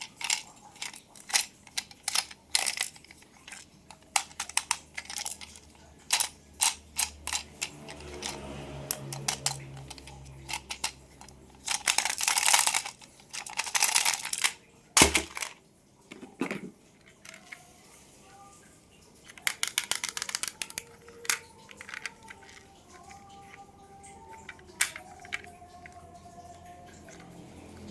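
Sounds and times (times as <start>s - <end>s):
plastic toy cars clicking: 0.0s - 18.4s, 19.1s - 27.9s
packaging rustling: 9.1s - 15.6s.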